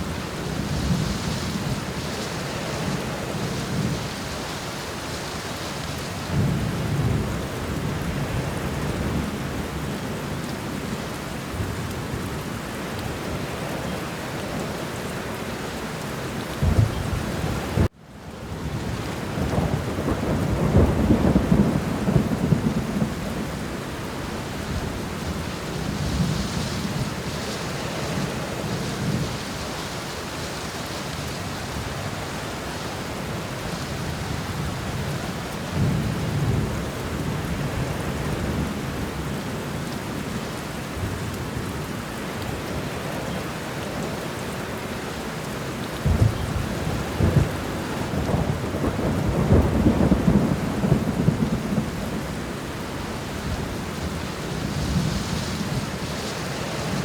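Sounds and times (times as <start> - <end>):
heavy rain falling: 0.0 - 57.0
rolling thunder: 18.6 - 29.7, 46.0 - 57.0.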